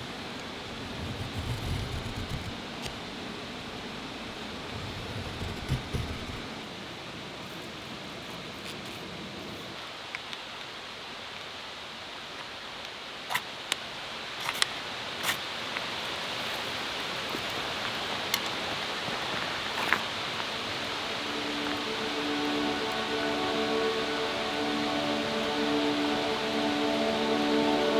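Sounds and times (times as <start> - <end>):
kindling fire hissing: 14.3 - 27.9.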